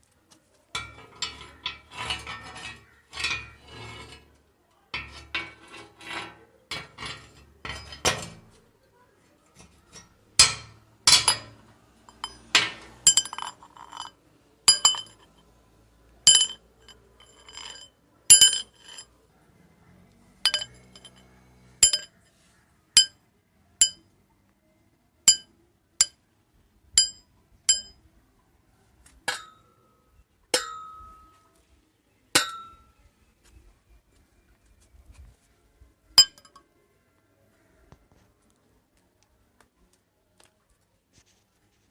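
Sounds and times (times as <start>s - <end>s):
metal rods clinking: 5.0s - 8.5s, 9.6s - 15.4s, 16.3s - 19.1s, 20.4s - 22.1s, 25.3s - 25.5s, 27.0s - 27.9s, 36.2s - 36.6s.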